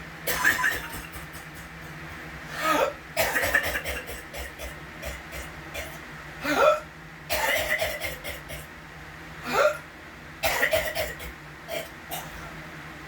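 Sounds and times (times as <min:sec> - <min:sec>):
person coughing: 0:00.3 - 0:01.9, 0:02.5 - 0:08.7, 0:09.4 - 0:12.5.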